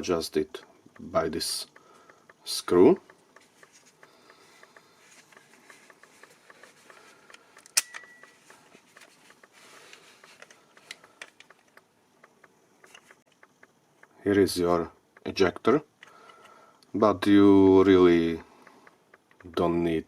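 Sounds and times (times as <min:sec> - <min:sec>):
small clicks and taps of toy gun: 0:01.0 - 0:14.2, 0:18.4 - 0:20.0
sharp ringing click: 0:07.6 - 0:08.4.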